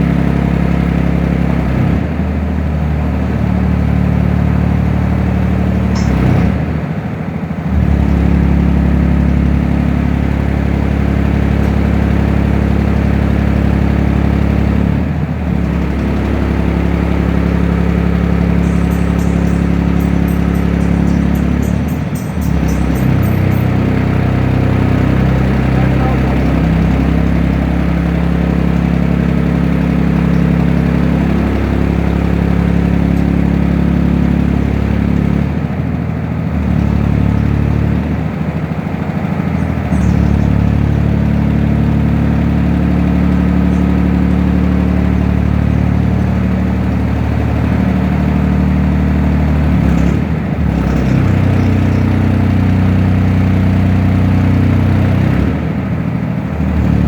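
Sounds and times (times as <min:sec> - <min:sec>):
engine driving hydraulic pump: 0:05.4 - 0:07.0, 0:07.7 - 0:35.6, 0:49.4 - 0:55.6.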